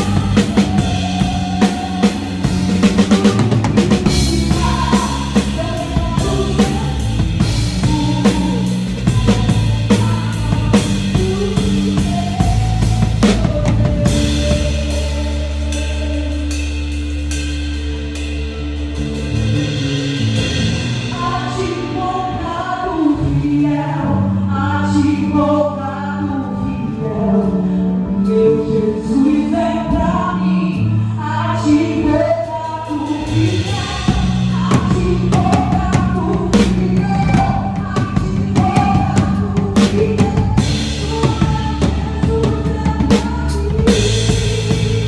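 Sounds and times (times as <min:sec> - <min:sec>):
drum kit hits: 0:00.0 - 0:15.4
person singing: 0:00.0 - 0:17.4, 0:21.0 - 0:45.0
bass and keys: 0:00.0 - 0:45.0.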